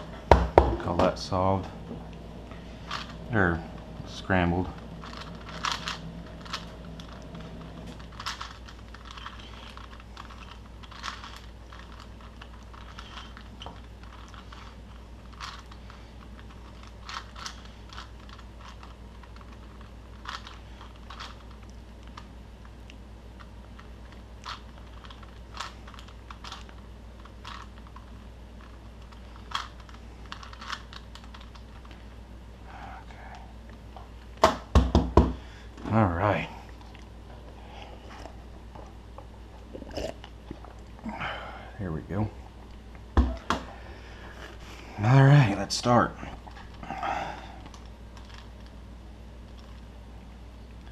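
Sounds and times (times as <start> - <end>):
low hum: 0.0 - 34.7, 35.4 - 50.9
plastic puzzle cube clicking: 16.8 - 19.5, 29.1 - 31.6.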